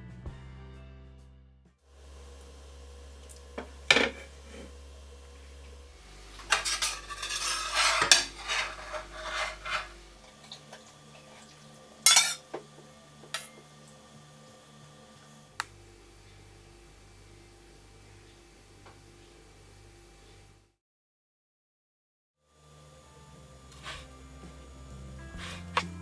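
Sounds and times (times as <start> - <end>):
stirring clatter: 3.2 - 12.5
utensils clinking on dishes: 3.3 - 4.7, 6.4 - 12.6.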